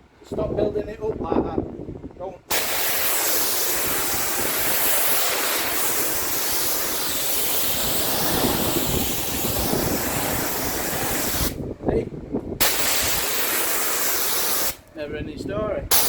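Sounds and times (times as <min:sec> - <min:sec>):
pressure washer spraying water: 0:02.5 - 0:11.6, 0:12.6 - 0:14.8.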